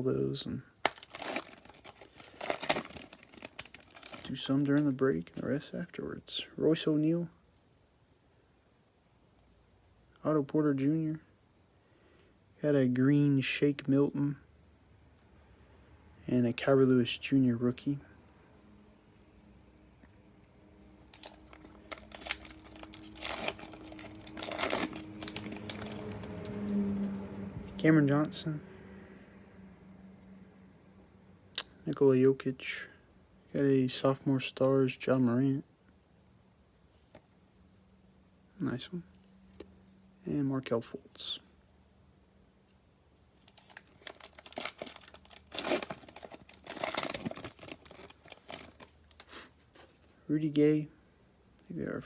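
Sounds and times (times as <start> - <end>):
plastic wrapper tearing and crinkling: 0.8 - 5.4, 21.0 - 27.0, 43.4 - 49.5.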